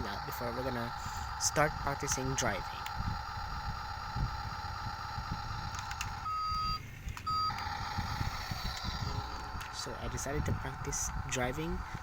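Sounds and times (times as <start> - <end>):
steady background hum: 0.0 - 12.0
electronic beeps: 6.2 - 7.6.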